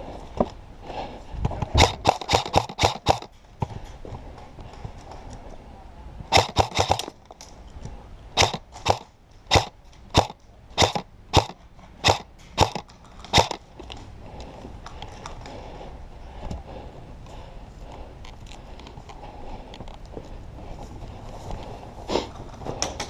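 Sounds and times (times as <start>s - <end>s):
airsoft gun shots: 1.8s - 3.3s, 6.3s - 7.2s, 8.4s - 13.6s.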